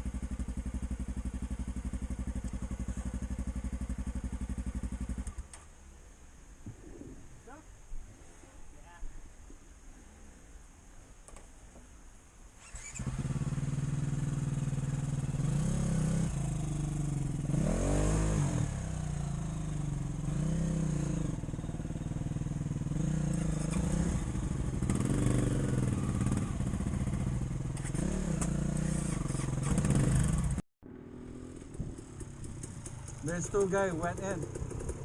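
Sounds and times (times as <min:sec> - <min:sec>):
off-road vehicle engine revving: 0:12.6 - 0:30.6.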